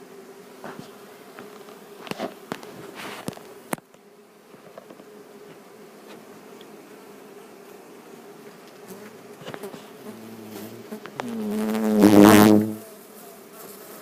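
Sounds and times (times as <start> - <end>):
bees buzzing in hive: 0.0 - 14.0.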